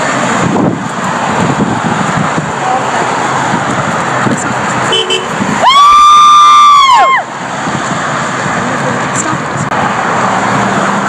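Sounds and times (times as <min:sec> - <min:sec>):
road traffic: 0:00.0 - 0:11.0
vehicle horn honking: 0:04.9 - 0:05.4.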